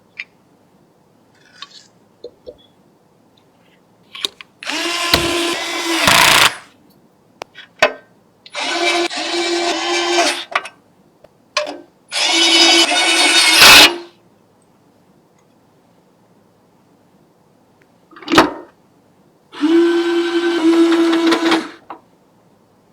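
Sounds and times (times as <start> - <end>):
electric screwdriver running: 4.6 - 6.6, 8.5 - 10.4, 12.1 - 14.0, 19.6 - 21.8.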